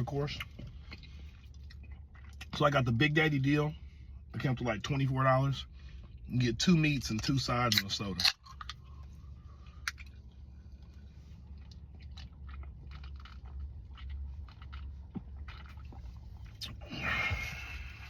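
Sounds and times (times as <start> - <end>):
low steady hum: 0.0 - 18.0
person chewing: 0.4 - 2.6, 8.5 - 18.0.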